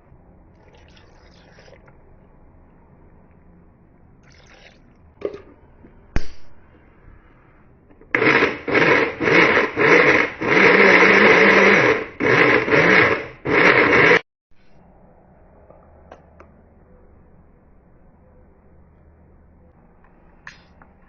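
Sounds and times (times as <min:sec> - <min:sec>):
blender motor pulsing: 0:08.1 - 0:14.2.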